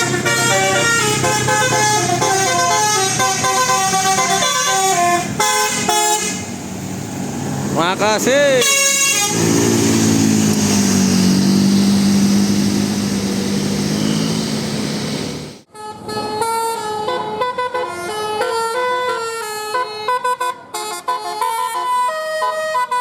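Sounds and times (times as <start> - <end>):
bus multi-tone horn tune: 0.0 - 6.6, 8.5 - 10.1, 15.7 - 23.0
large vehicle engine and road noise: 0.0 - 23.0.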